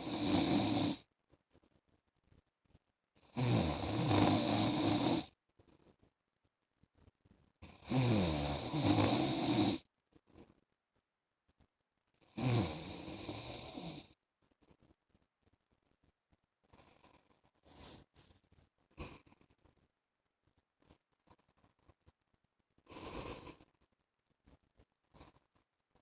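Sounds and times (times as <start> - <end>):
man snoring: 0.0 - 1.0, 3.3 - 5.3, 7.8 - 9.8, 12.4 - 14.1
quiet breathing: 16.6 - 19.8, 22.8 - 23.9, 25.0 - 25.7.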